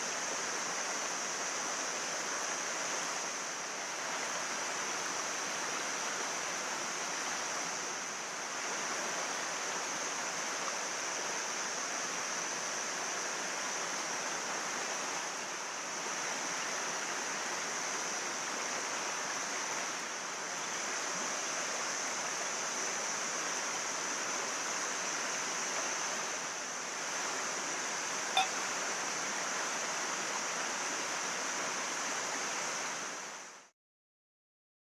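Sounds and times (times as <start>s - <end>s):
mountain stream flowing: 0.0s - 33.7s.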